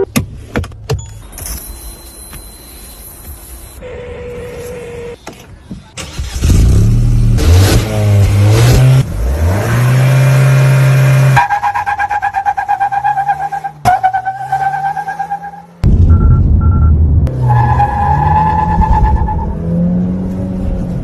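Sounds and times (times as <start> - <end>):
car engine starting and revving: 6.0 - 11.4.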